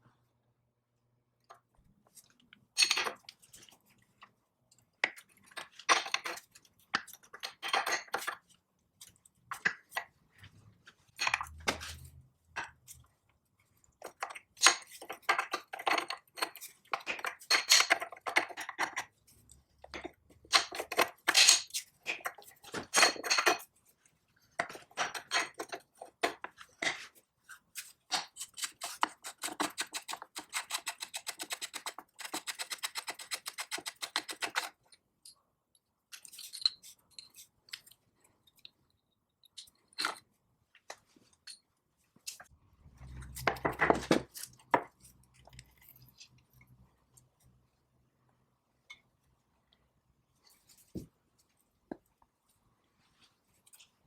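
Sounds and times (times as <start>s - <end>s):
metal parts clinking and scraping: 36.1s - 37.5s.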